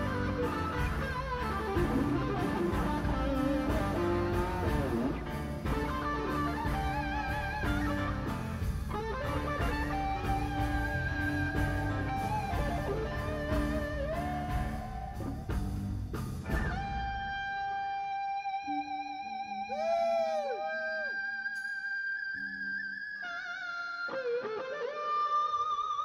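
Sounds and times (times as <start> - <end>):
drum and bass groove: 0.0 - 17.4
electric guitar lead: 0.0 - 26.0.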